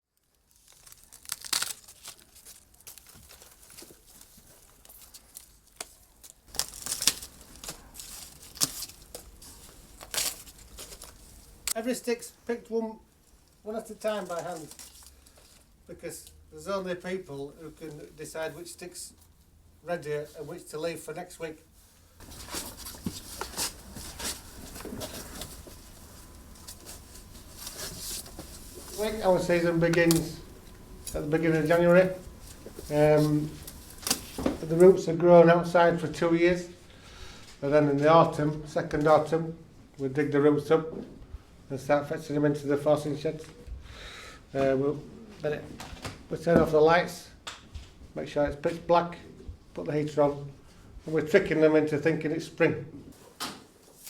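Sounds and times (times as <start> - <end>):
rhubarb stalks tearing: 0.2 - 11.8, 14.0 - 15.7, 23.5 - 34.9
leaves rustling: 0.4 - 12.0, 13.3 - 15.7, 21.8 - 35.0
rhubarb stalks squeaking and popping: 0.5 - 3.7, 4.8 - 9.4.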